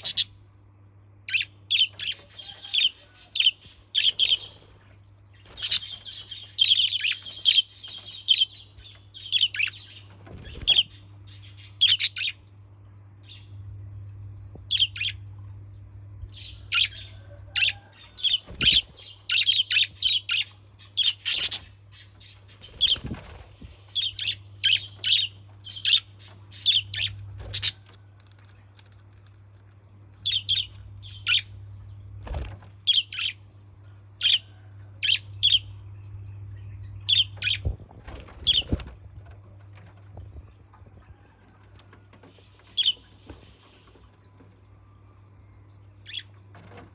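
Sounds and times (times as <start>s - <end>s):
budgerigars chirping: 0.0s - 0.3s, 1.3s - 4.6s, 5.6s - 8.6s, 9.2s - 12.4s, 16.4s - 23.1s, 24.0s - 27.8s
steady low hum: 0.0s - 46.9s.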